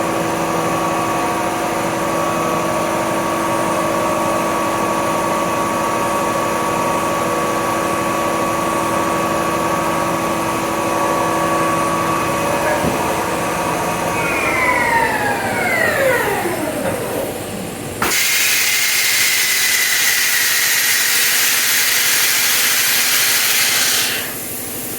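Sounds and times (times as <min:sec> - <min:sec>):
machine spindle whine: 0:07.5 - 0:24.3.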